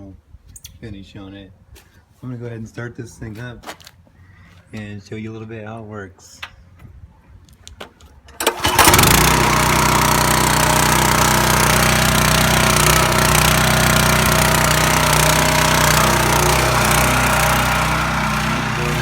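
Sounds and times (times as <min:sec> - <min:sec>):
pressure washer engine running: 0:08.4 - 0:19.0.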